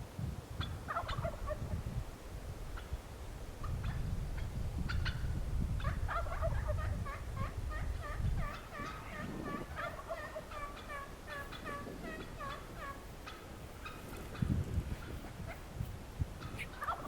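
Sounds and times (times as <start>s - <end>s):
wild turkeys calling: 0.6s - 1.8s, 2.7s - 3.0s, 3.6s - 15.7s, 16.4s - 17.0s.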